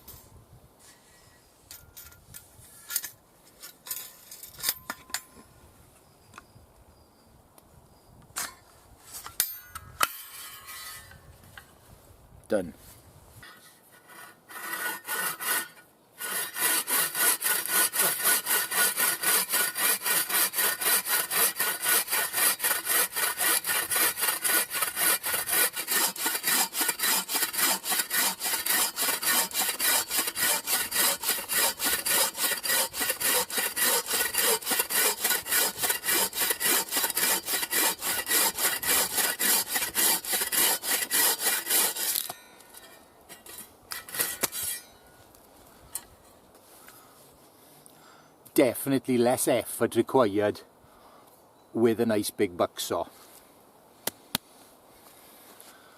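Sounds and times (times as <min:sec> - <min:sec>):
bucksaw cutting through log: 0:13.9 - 0:42.3.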